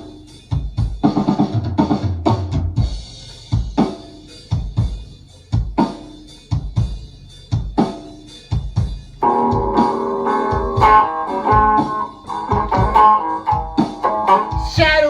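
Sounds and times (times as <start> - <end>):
drum kit playing: 0.0 - 15.0
band with guitar: 9.2 - 15.0.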